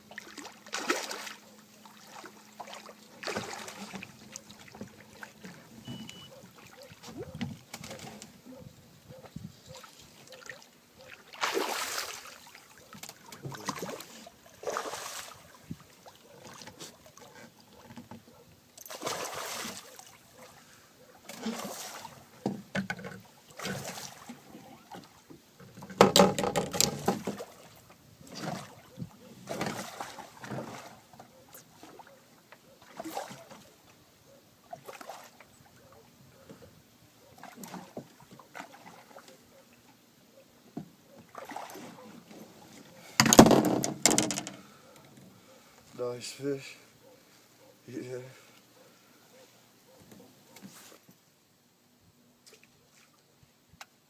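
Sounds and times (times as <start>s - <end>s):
water splashing: 0.0s - 8.6s, 9.7s - 17.8s, 18.8s - 22.4s, 23.2s - 25.2s, 26.9s - 32.2s, 32.8s - 33.8s, 34.6s - 36.1s, 37.3s - 39.4s, 41.3s - 43.6s
knocks and handling noises: 25.7s - 27.3s, 43.2s - 45.2s.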